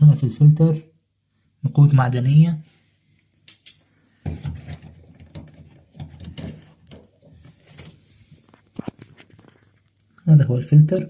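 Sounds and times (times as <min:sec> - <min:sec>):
plastic filter rattling and scraping: 0:04.2 - 0:09.8.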